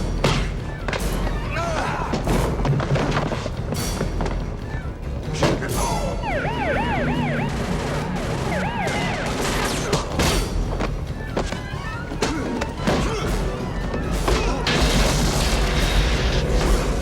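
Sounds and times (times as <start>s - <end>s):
warbling alarm siren: 5.8s - 10.2s.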